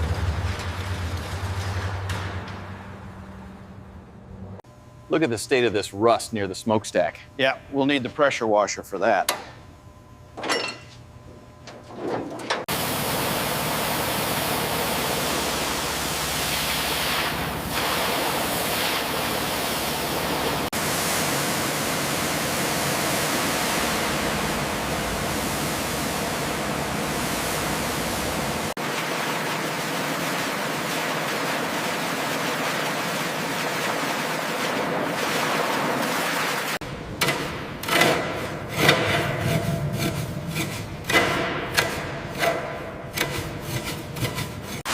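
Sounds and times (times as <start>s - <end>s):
pressure washer spraying: 12.7s - 36.8s
scraping and rubbing: 37.8s - 44.9s.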